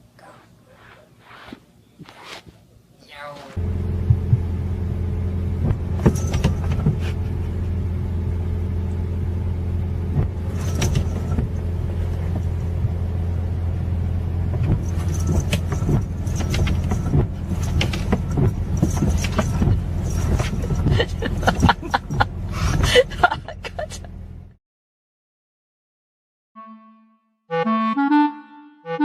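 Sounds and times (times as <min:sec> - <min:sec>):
steady low hum: 0:00.0 - 0:24.5.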